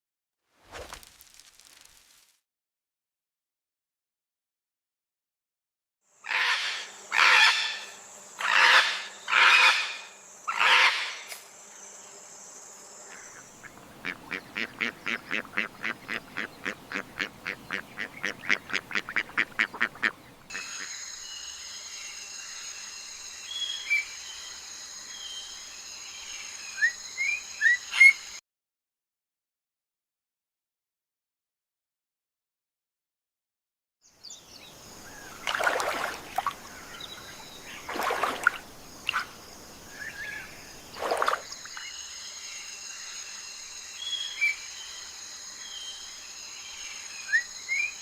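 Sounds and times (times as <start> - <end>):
ducks quacking: 13.2 - 20.9
bird chirps: 13.2 - 21.5.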